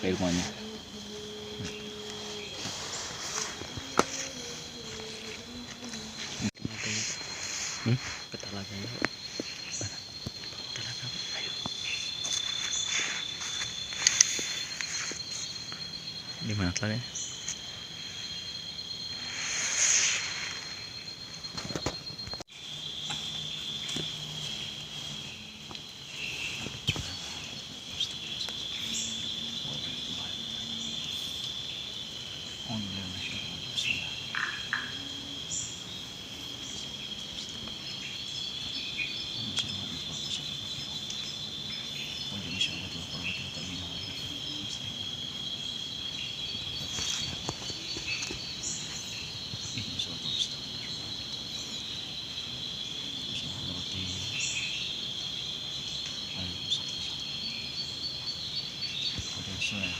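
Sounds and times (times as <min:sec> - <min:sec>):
crickets and insects trilling: 0:00.0 - 0:59.9
faint low murmur: 0:42.2 - 0:45.1.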